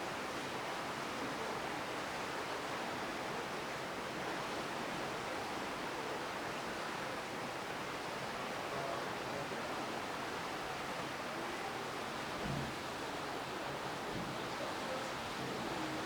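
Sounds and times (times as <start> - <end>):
sea and wind rushing hiss: 11.2 - 16.0.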